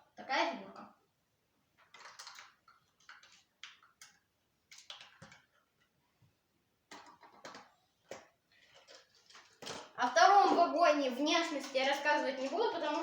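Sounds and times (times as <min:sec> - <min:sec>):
plastic parts clicking and rustling: 0:01.8 - 0:06.0, 0:06.9 - 0:13.0.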